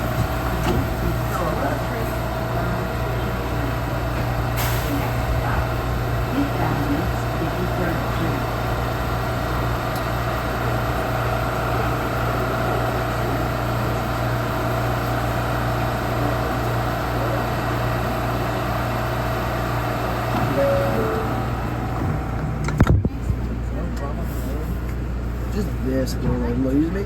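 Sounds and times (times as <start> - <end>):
subway train rumble: 0.0 - 27.0
low hum: 19.4 - 24.0
stepping high tone: 20.3 - 22.5.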